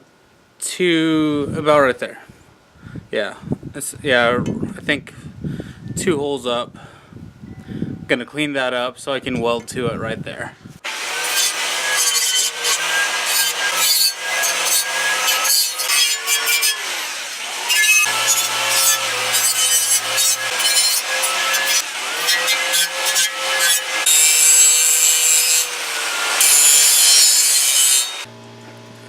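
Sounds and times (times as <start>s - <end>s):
power tool grinding metal: 10.8s - 28.3s.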